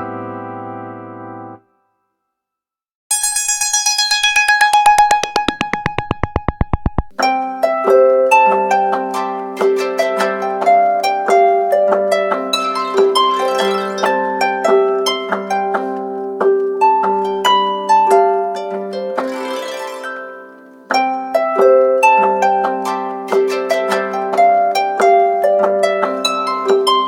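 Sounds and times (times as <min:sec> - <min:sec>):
harp-like plucked phone melody: 0:03.1 - 0:27.0.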